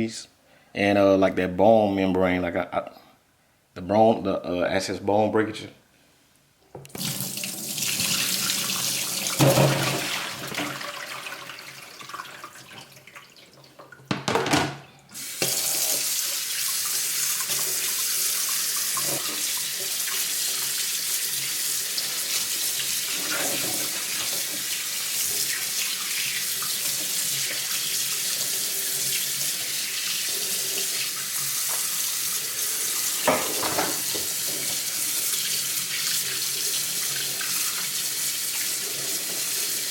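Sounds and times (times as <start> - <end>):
tap water running into sink: 6.8 - 39.9
knocks: 14.1 - 14.8.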